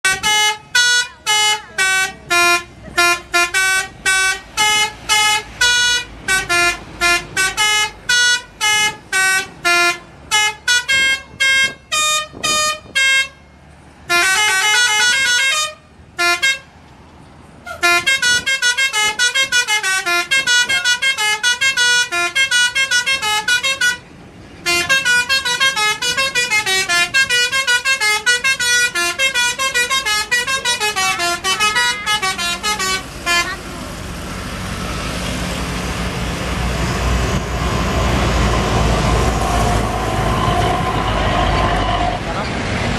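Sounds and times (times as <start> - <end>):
multi-tone bus horn tunes: 0.0 - 16.8, 17.6 - 33.9.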